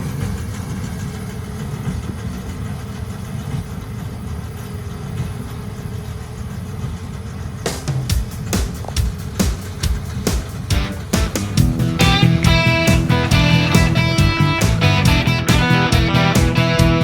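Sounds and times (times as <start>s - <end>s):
tractor engine running: 0.0s - 17.0s
guitar music: 10.7s - 17.0s.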